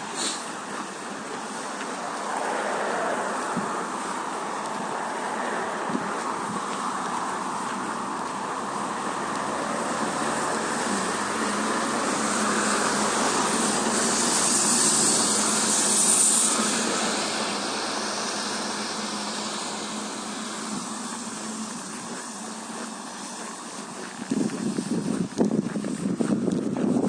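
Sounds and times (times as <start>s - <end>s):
vehicle passing: 0.0s - 27.0s.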